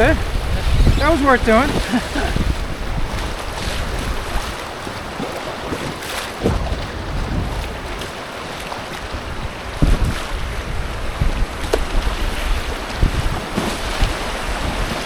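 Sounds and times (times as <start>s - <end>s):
rushing creek water: 0.0s - 15.0s
wind on microphone: 0.0s - 15.0s
splashes and knocks: 1.3s - 10.6s, 11.2s - 15.0s.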